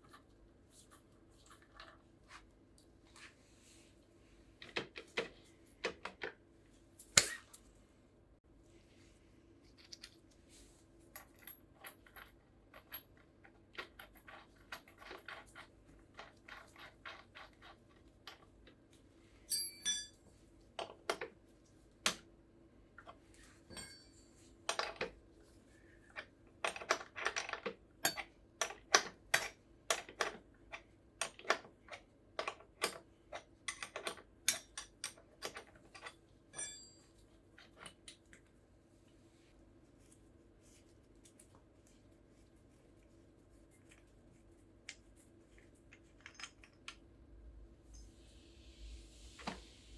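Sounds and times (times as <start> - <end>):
metallic rings of parts dropped: 19.5 - 20.2, 23.7 - 24.4, 36.6 - 37.2
tools clicking and clinking: 19.5 - 20.2, 23.7 - 25.1, 33.7 - 38.4.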